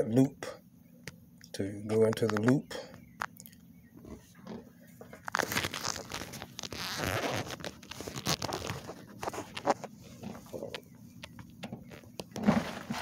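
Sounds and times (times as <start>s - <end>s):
plastic zip tie rasping and clicking: 5.2s - 9.8s.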